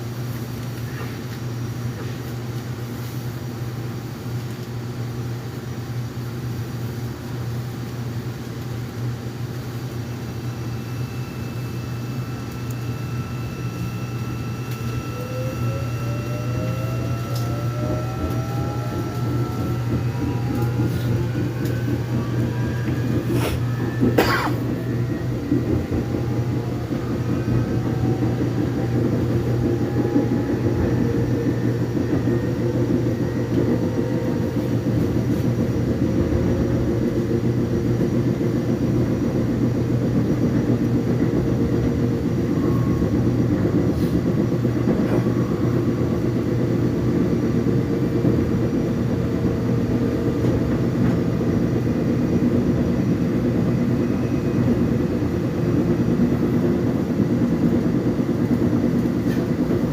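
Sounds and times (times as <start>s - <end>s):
train rumbling on rails: 0.0s - 59.9s
traction motors whining: 10.5s - 46.6s.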